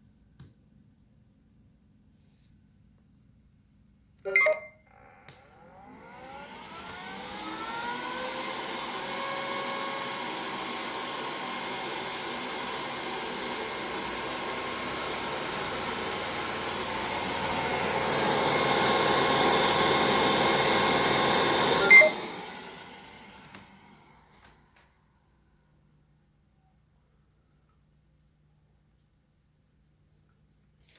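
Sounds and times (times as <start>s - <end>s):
robot vacuum motors whirring: 5.3s - 23.8s.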